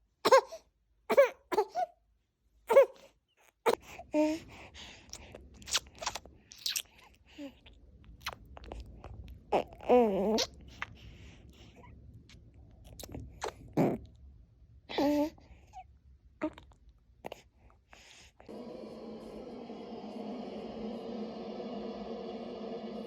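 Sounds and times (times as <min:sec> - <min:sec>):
baby nursing mouth sounds: 0:05.0 - 0:11.0
baby whimpering: 0:09.5 - 0:10.9.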